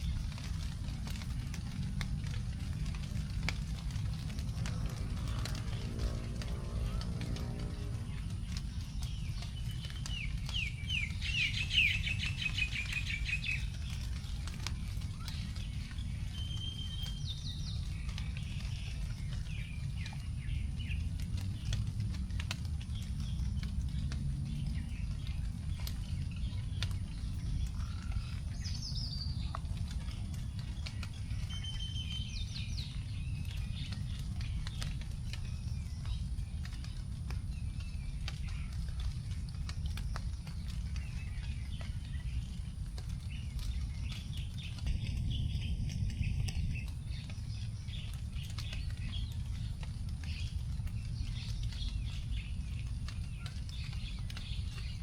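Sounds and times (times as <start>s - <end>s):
raindrops dripping on leaves: 0.0s - 55.0s
steady low rumble: 0.0s - 55.0s
birds chirping and whistling: 8.7s - 14.1s, 30.8s - 55.0s.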